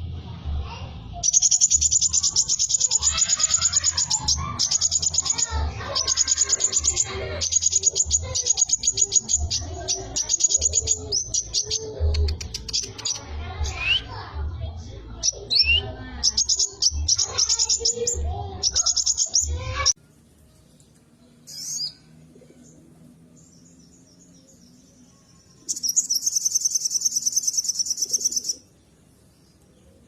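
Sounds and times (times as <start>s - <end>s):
fast high bird trill: 1.2s - 11.8s, 25.7s - 28.6s
high-pitched bird chirps: 1.2s - 14.2s, 15.2s - 20.0s, 21.4s - 22.1s, 23.8s - 28.8s.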